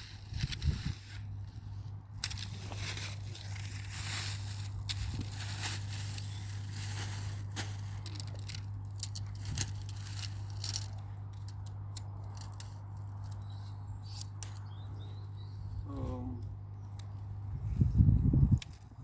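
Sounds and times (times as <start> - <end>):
steady low hum: 0.0 - 19.0
sharp crackles and clicks: 2.2 - 14.9
tent fabric rustling: 2.4 - 8.0.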